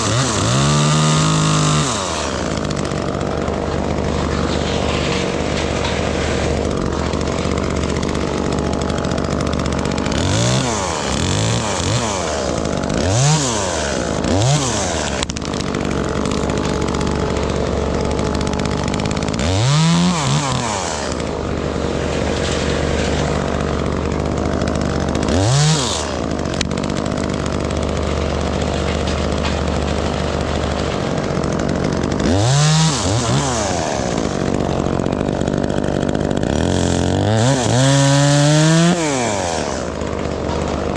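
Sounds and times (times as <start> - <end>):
chainsaw idling and revving: 0.0 - 40.9.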